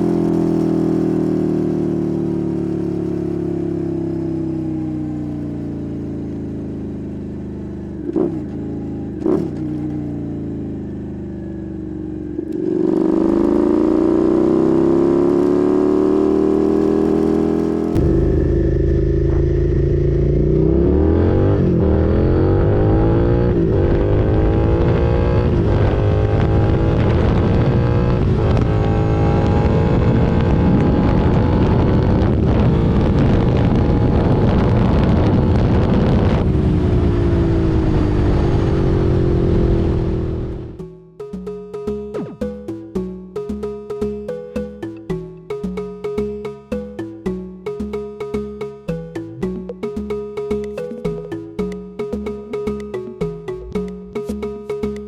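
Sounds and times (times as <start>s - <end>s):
motorcycle engine accelerating: 0.0s - 55.0s
wind noise on microphone: 23.9s - 40.6s.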